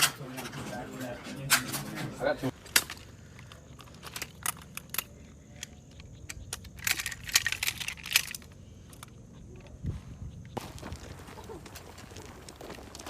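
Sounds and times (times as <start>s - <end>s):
metal equipment clinking: 6.4s - 8.5s.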